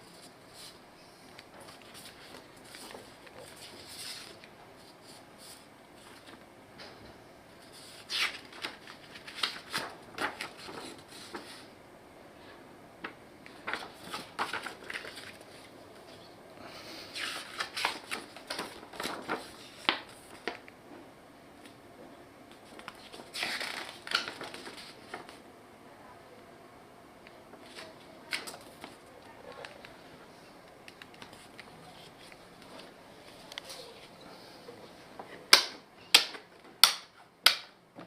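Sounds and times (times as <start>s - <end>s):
packaging rustling: 22.6s - 25.4s.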